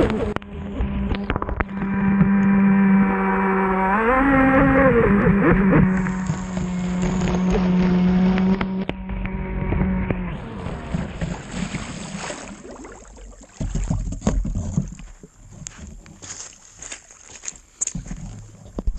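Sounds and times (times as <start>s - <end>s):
water slapping against hull: 10.5s - 15.4s.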